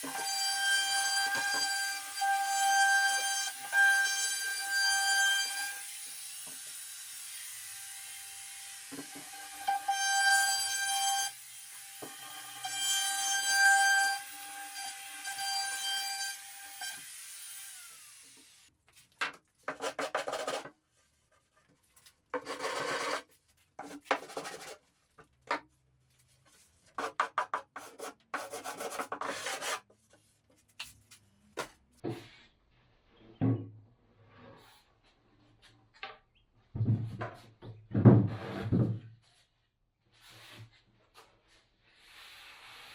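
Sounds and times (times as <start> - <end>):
scraping strokes on wood: 22.3 - 24.8, 26.4 - 29.9.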